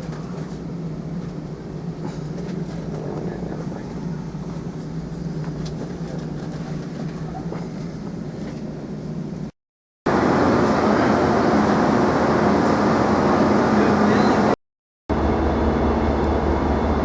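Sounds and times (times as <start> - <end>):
train rumbling on board: 0.0 - 9.5, 10.1 - 17.0.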